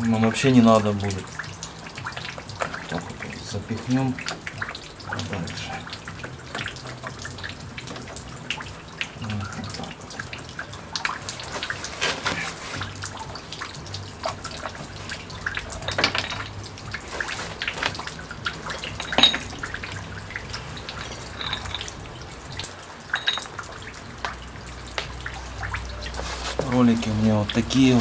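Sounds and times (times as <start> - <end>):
ringing metallic clink: 23.2 - 23.6.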